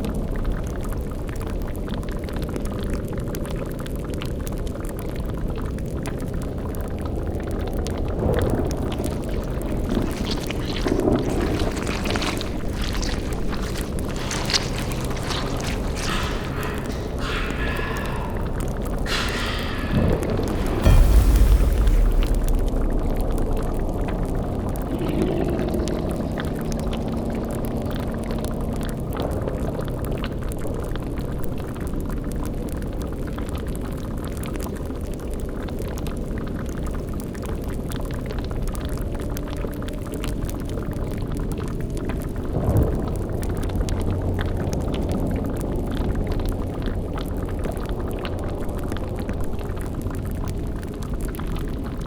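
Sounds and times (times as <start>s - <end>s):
bubbling boiling liquid: 0.0s - 52.0s
low rumble: 6.9s - 28.2s.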